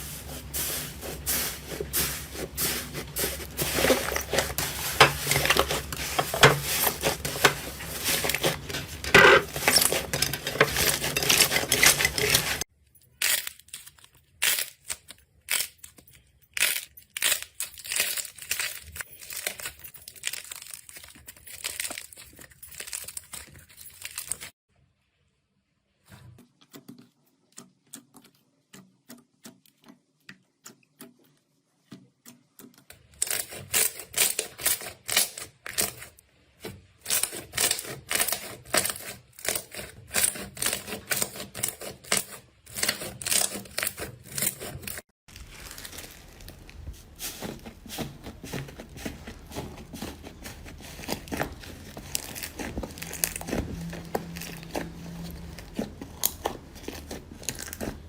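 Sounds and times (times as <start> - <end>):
slime crackling and popping: 45.3 - 58.0.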